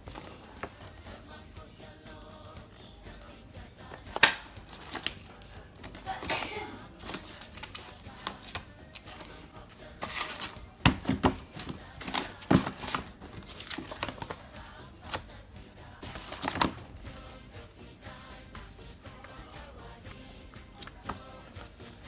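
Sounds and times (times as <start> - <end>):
packaging rustling and tearing: 4.0 - 15.2, 16.0 - 17.1.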